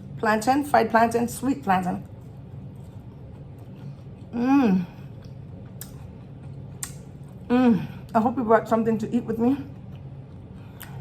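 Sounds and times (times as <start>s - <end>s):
woman humming mmm: 4.3s - 5.0s, 7.5s - 8.0s.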